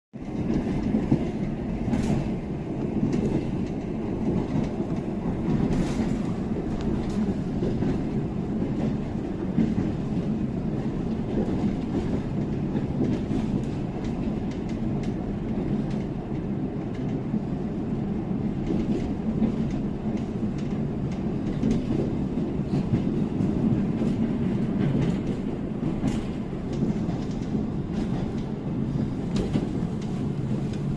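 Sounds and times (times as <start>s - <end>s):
train rumbling past: 0.2s - 30.9s
wheels clicking over rail joints: 18.5s - 30.9s.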